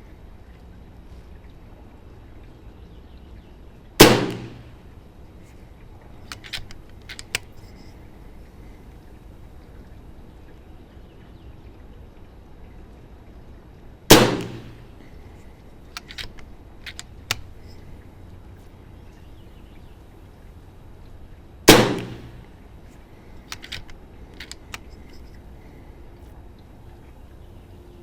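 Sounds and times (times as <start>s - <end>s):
air rifle shots: 4.0s - 4.8s, 14.1s - 15.1s, 21.7s - 22.5s
light clicks: 5.4s - 8.0s, 14.4s - 18.0s, 22.0s - 27.2s.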